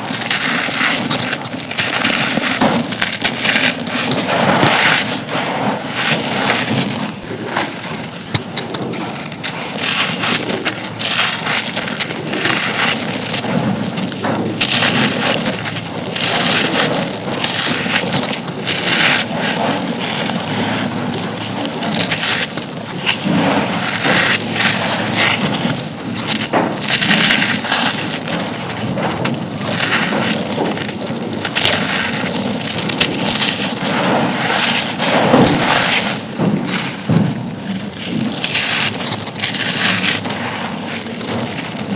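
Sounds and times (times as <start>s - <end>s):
concrete being crushed: 0.0s - 41.9s.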